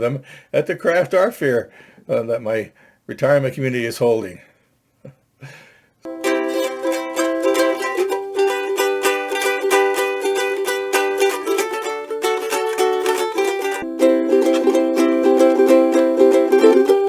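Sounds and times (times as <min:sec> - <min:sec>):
ukulele strummed in chords: 0:06.1 - 0:17.0.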